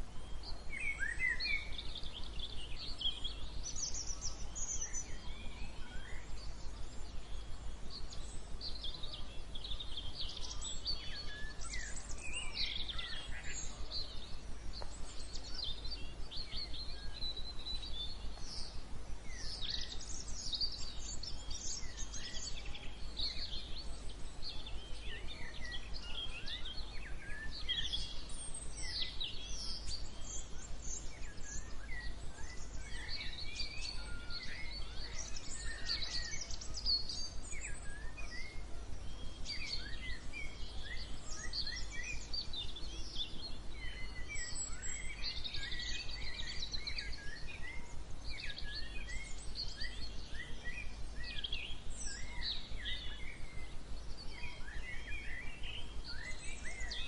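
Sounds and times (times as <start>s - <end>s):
birds chirping and singing: 0.0s - 57.0s.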